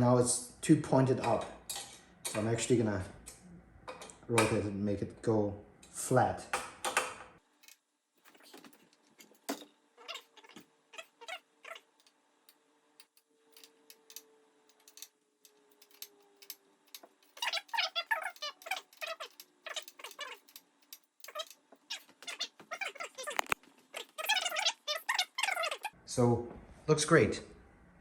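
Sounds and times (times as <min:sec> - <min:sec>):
hand tools clicking on bicycle: 0:13.0 - 0:25.9.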